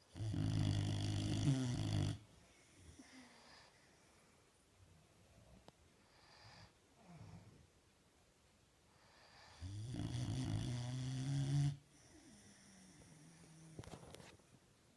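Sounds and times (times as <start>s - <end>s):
dog snoring loudly: 0.1s - 2.2s, 9.2s - 13.7s.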